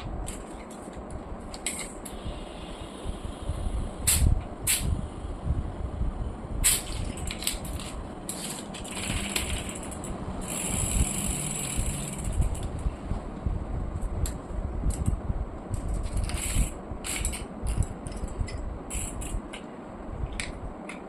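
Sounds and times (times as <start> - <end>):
bicycle parts rattling and scraping: 0.0 - 2.2, 6.7 - 13.3, 14.0 - 19.6.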